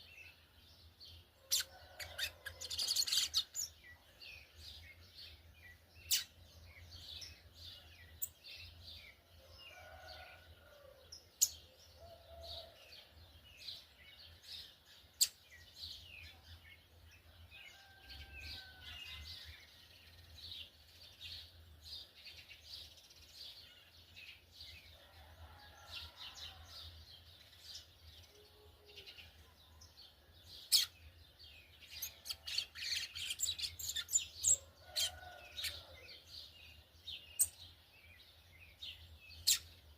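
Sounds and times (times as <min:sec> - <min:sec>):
bird twittering song: 0:00.0 - 0:39.9.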